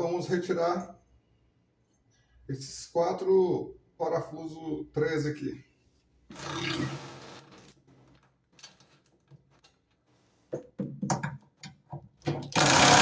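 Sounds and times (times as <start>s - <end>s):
power driver whirring: 12.5s - 13.0s.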